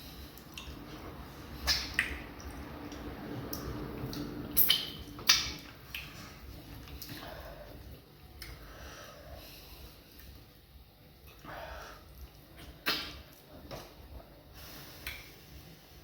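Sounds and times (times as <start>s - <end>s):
wet chewing and squishing: 0.0s - 8.7s, 10.0s - 11.5s, 12.1s - 14.3s
wet mouth smacks: 1.6s - 6.2s, 12.6s - 13.9s, 15.0s - 15.3s.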